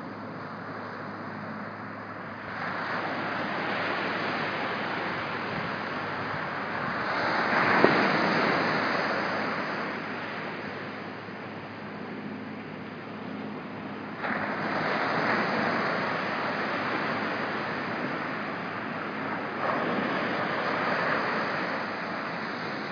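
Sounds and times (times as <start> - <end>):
surf breaking on beach: 2.5 - 11.0, 14.2 - 22.9.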